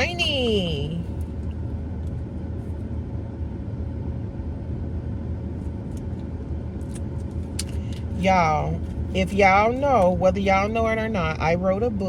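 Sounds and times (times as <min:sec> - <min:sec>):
car engine rumbling: 0:00.0 - 0:12.0
faint constant hum: 0:00.0 - 0:12.0.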